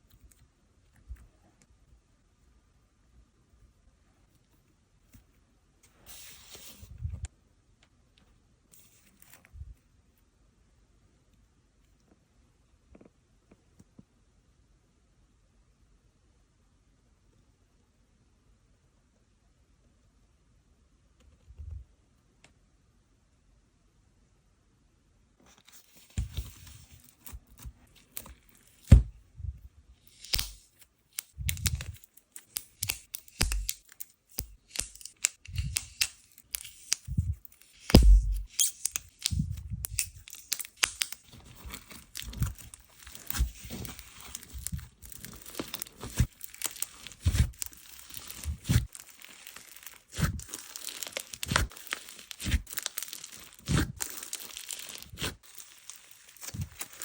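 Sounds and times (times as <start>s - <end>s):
slime crackling and popping: 30.1s - 57.0s.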